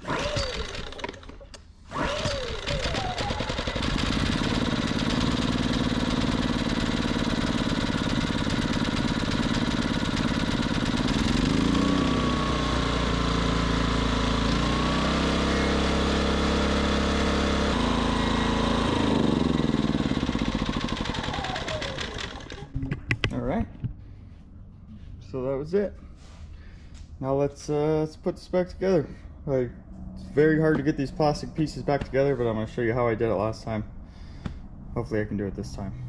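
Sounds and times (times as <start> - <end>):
small generator engine running: 0.0 - 22.8.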